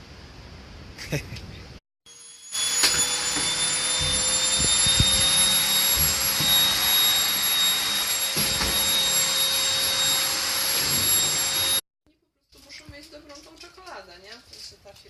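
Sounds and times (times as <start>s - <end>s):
vacuum cleaner whining: 2.1s - 11.8s.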